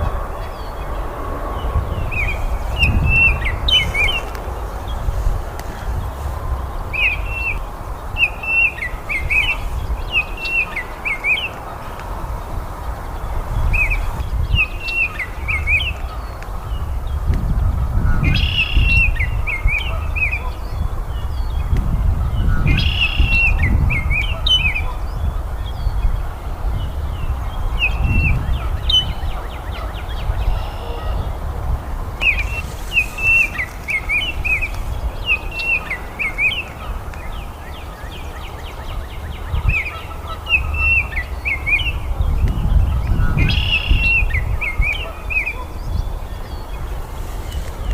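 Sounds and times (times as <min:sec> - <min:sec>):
bird whistling song: 0:02.1 - 0:04.4, 0:22.4 - 0:24.9, 0:32.2 - 0:46.8.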